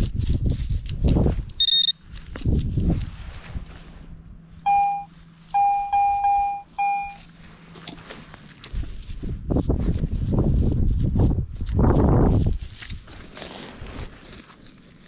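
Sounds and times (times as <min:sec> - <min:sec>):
rustling and scuffing ground: 0:00.0 - 0:15.0
metal detector beeps: 0:01.6 - 0:02.0, 0:04.6 - 0:07.3.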